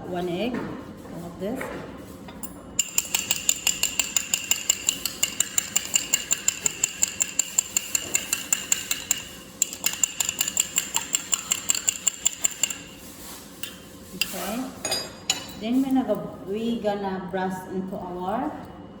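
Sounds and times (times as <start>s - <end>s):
utensil clinking against bowl: 2.3s - 16.2s.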